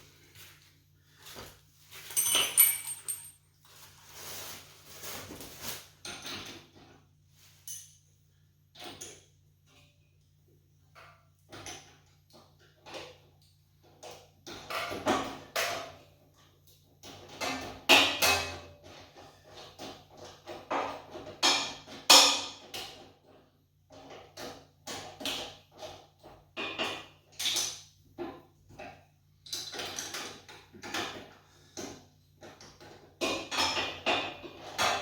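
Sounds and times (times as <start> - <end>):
metal tools clanking: 2.1 - 3.4.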